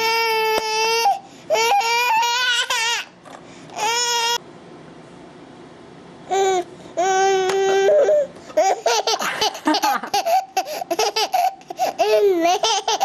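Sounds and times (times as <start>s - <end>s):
child laughing: 7.5s - 13.0s.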